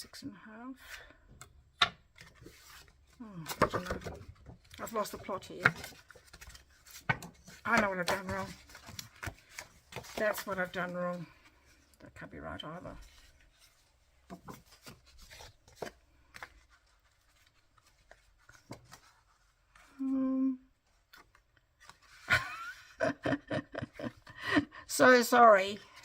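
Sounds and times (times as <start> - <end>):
craft paper rustling: 2.1 - 12.0, 12.8 - 20.0, 20.9 - 22.4.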